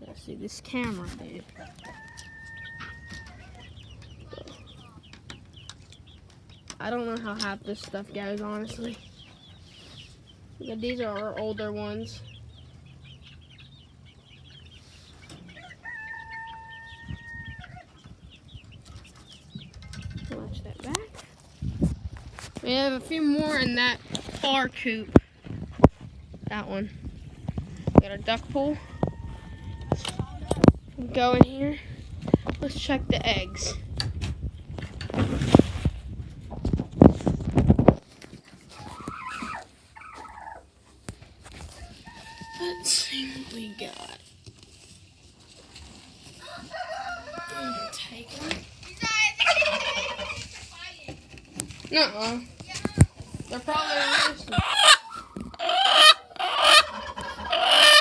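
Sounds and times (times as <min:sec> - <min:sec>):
chickens clucking and peeping: 0:00.0 - 0:58.0
rooster crowing: 0:01.6 - 0:03.6, 0:15.6 - 0:17.7, 0:46.4 - 0:48.0
hens clucking softly: 0:38.7 - 0:44.2, 0:49.4 - 0:50.6, 0:53.5 - 0:58.0.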